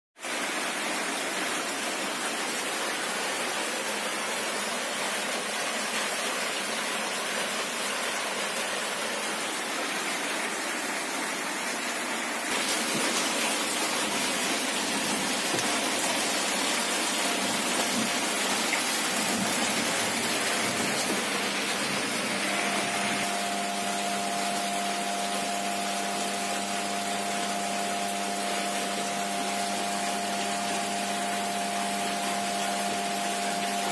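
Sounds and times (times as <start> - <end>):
rushing water noise: 0.2 - 33.9
motor hum: 12.5 - 33.9.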